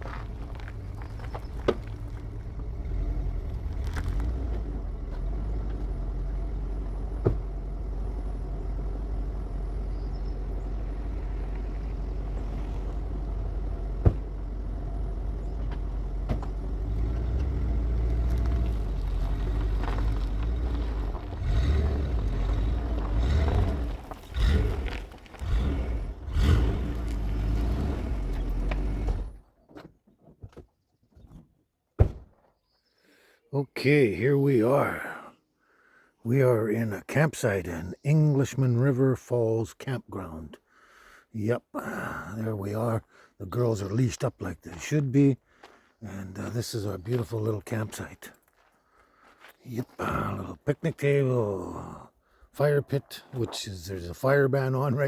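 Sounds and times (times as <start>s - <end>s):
truck engine and road rumble: 0.0s - 32.4s, 33.5s - 55.0s.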